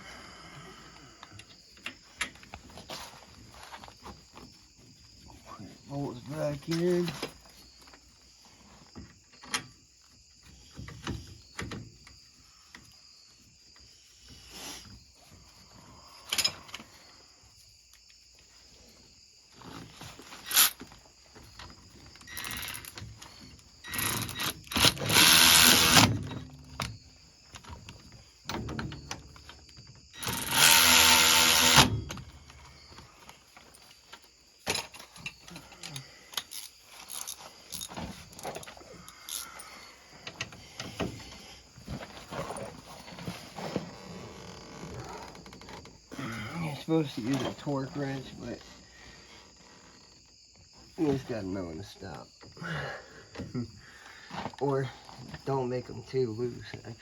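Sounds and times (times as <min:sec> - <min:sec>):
cordless power tool running: 0:24.8 - 0:26.1, 0:30.2 - 0:31.9.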